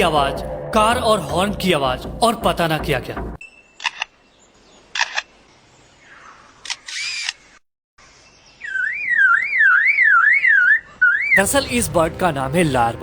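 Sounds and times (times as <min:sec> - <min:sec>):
bird imitating camera shutter: 0:03.8 - 0:04.1, 0:05.0 - 0:05.3, 0:06.6 - 0:07.5
bird imitating car alarm: 0:08.6 - 0:11.4.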